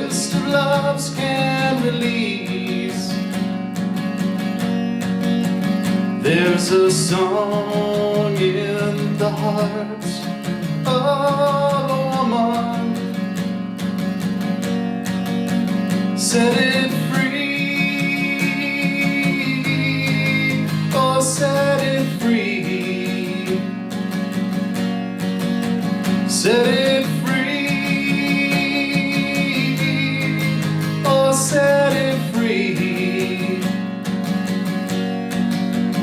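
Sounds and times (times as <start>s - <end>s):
person singing: 0.0s - 3.4s, 6.2s - 13.2s, 16.2s - 23.9s, 26.2s - 34.0s
acoustic guitar strumming: 0.0s - 36.0s.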